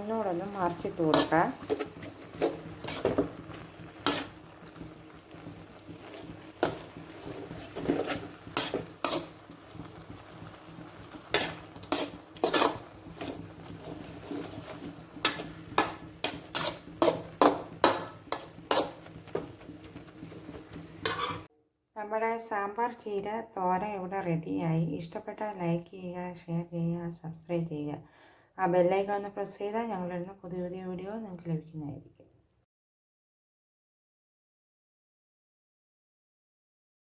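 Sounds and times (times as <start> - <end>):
utensil scraping a cooking pan: 0.0 - 21.5.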